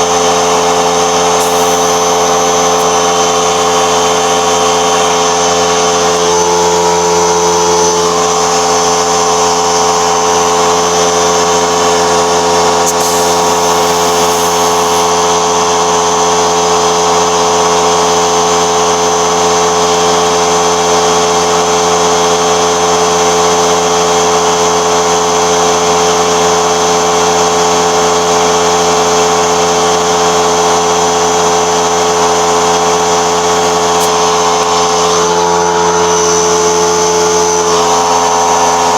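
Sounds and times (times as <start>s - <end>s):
machine motor humming: 0.0s - 15.9s, 33.3s - 38.9s
short hiss: 1.4s - 3.0s, 12.8s - 15.4s.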